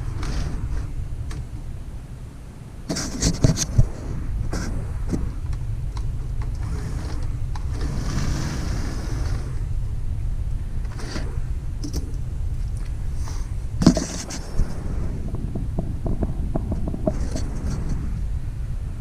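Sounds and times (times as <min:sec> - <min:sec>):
model locomotive motor rumbling: 0:04.1 - 0:19.0.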